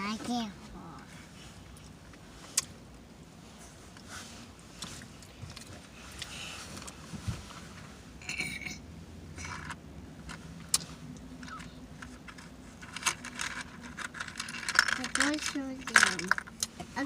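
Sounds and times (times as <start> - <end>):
low steady hum: 0.0 - 17.0
small clicks and rustles: 3.6 - 7.9, 9.4 - 17.0.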